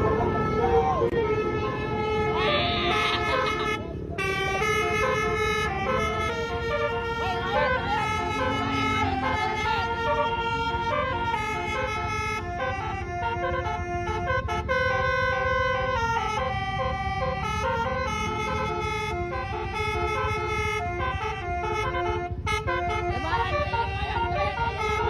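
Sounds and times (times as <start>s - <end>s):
low engine rumble: 0.0s - 25.0s
musical vehicle horn melody: 0.0s - 25.0s.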